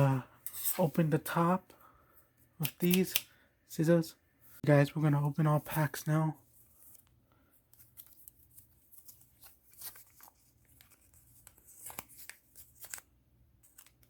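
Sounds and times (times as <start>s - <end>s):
card packs rustling: 7.7s - 14.0s.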